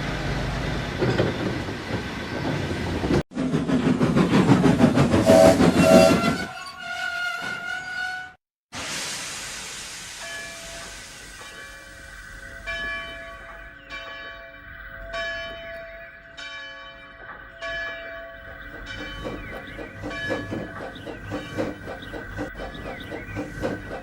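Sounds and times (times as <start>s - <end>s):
steam hiss: 8.7s - 12.8s
locomotive bell ringing: 10.2s - 21.8s.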